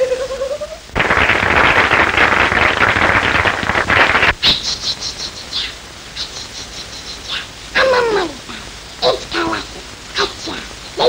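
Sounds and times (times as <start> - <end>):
audience applause: 0.9 - 4.4.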